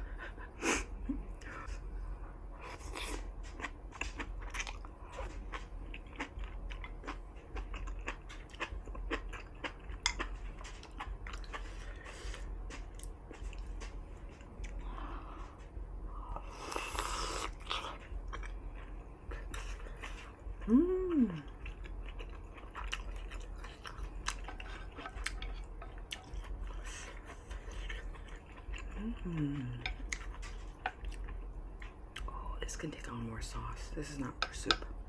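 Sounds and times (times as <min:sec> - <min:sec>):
wet chewing and mouth smacking: 0:02.6 - 0:14.8, 0:16.7 - 0:20.7, 0:21.3 - 0:32.4.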